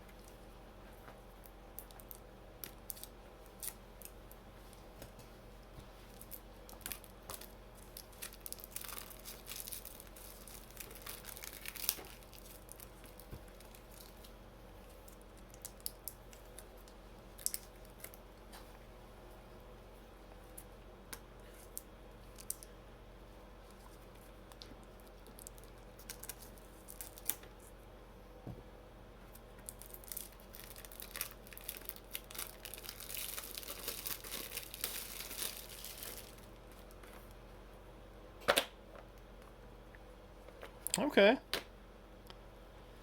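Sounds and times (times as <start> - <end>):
plastic wrapping tearing and crinkling: 1.8 - 4.2, 6.1 - 14.3, 24.9 - 27.5, 29.6 - 37.0.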